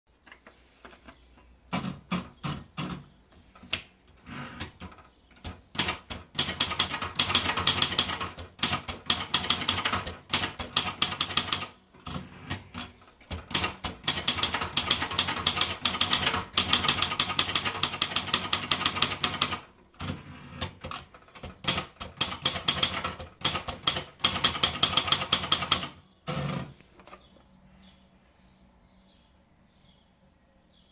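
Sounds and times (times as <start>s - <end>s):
typewriter keystrokes: 3.6s - 26.7s.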